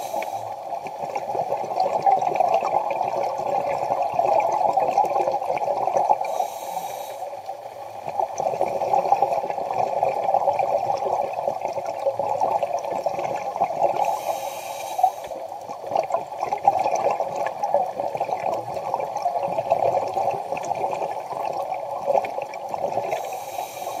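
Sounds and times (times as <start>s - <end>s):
short hissing bursts: 0.0s - 0.6s, 6.2s - 7.4s, 14.0s - 15.4s, 23.2s - 24.0s.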